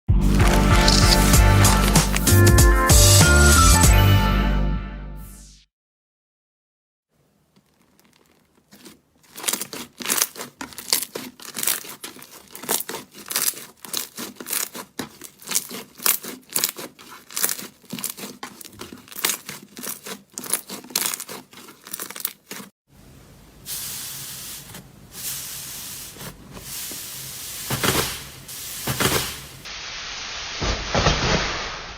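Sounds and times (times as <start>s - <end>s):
slime popping and crackling: 0.2s - 2.4s, 7.6s - 22.7s.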